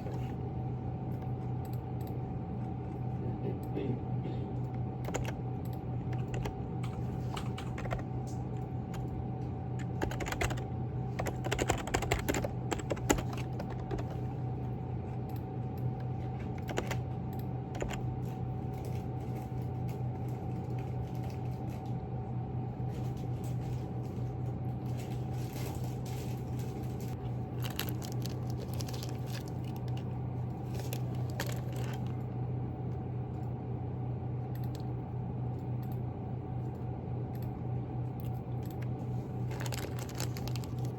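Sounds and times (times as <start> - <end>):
low hum: 0.0 - 40.9
computer keyboard typing: 4.7 - 9.2, 9.8 - 14.4, 15.3 - 18.2, 39.5 - 40.9.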